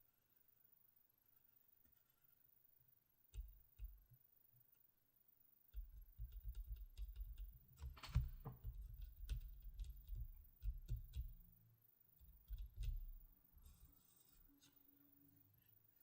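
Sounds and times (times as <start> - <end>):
fingers tapping packaging: 5.8 - 11.4, 12.2 - 13.3.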